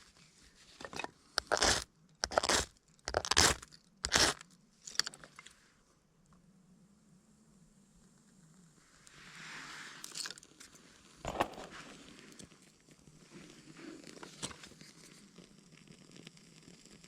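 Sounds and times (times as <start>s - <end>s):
sharp crunches and knocks: 0.9s - 5.2s.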